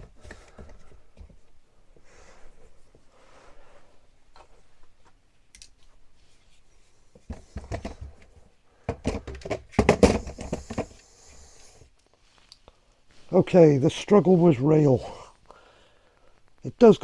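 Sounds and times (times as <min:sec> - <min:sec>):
power tools knocking in plastic box: 0:08.9 - 0:11.0.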